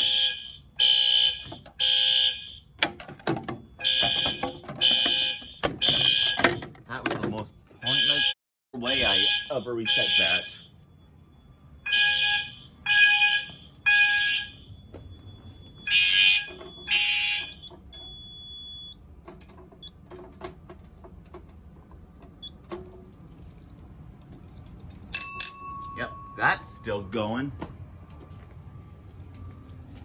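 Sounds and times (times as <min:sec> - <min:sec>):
fire alarm horn blasts: 0:00.0 - 0:02.8, 0:03.8 - 0:06.7, 0:07.8 - 0:19.0.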